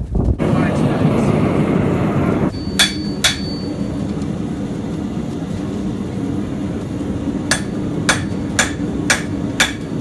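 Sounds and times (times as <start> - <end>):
steady low hum: 0.2 - 10.0
hammer blows on steel: 2.5 - 3.7.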